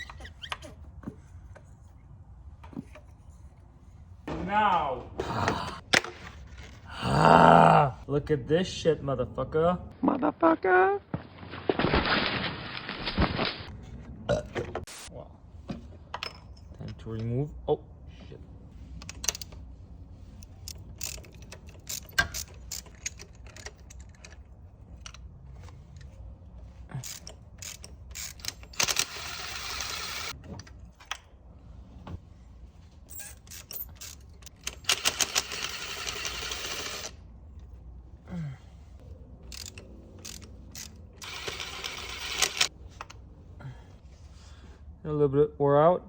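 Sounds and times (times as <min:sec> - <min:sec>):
ratchet wrench clicking: 0:20.5 - 0:24.3, 0:27.0 - 0:30.4, 0:39.5 - 0:42.7.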